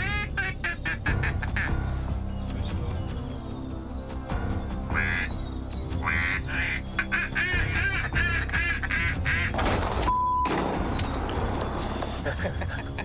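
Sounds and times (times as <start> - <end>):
duck quacking rapidly: 0.0 - 1.8, 4.9 - 5.3, 6.0 - 9.6
background music: 0.0 - 13.0
short steady beep: 10.1 - 10.5.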